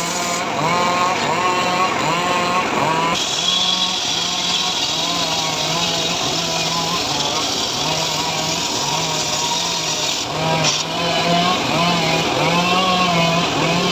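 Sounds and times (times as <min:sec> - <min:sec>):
sawmill engine running: 0:00.0 - 0:13.9
high hiss: 0:03.2 - 0:10.8.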